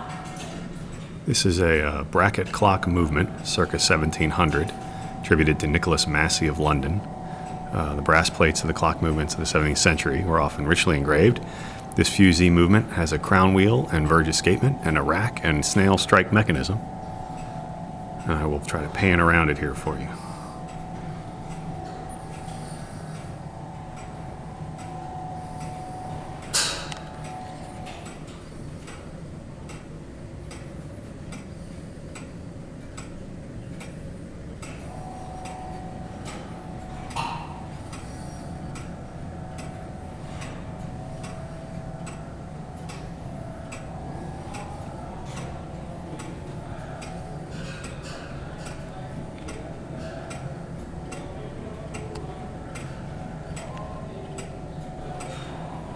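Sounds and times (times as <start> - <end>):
low steady hum: 0.0 - 55.9
clock ticking: 1.7 - 55.9.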